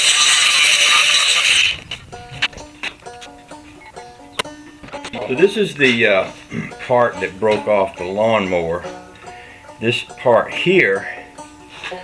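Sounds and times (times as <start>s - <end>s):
loud hiss: 0.0s - 2.6s
plucked string music: 0.0s - 12.0s.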